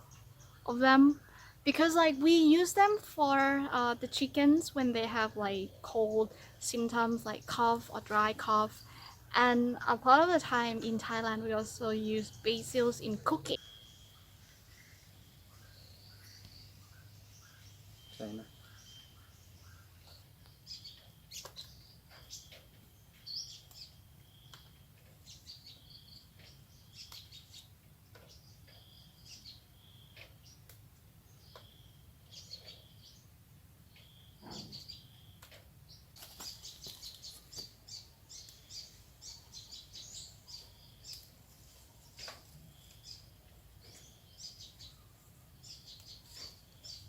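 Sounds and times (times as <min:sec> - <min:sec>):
birds whistling and chirping: 0:13.0 - 0:30.6, 0:31.3 - 0:33.3, 0:33.9 - 0:41.3.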